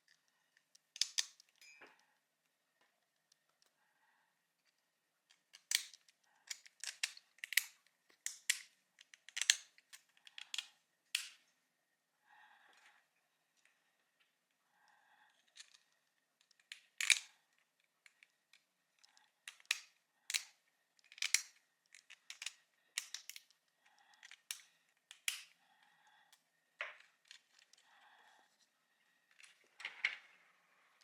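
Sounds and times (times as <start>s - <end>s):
plastic parts clicking together: 0.0s - 2.0s, 4.6s - 11.4s, 15.4s - 25.6s, 26.3s - 28.0s, 29.3s - 30.4s.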